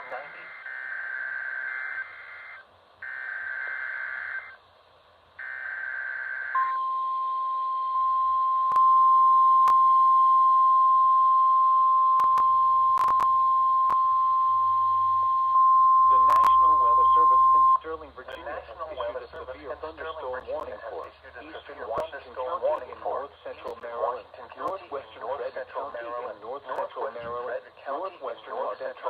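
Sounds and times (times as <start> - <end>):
sharp static clicks: 0.0 - 6.8, 8.7 - 9.0, 9.6 - 10.1, 12.0 - 27.7
steady warning alarm tone: 0.1 - 4.6, 5.4 - 17.9.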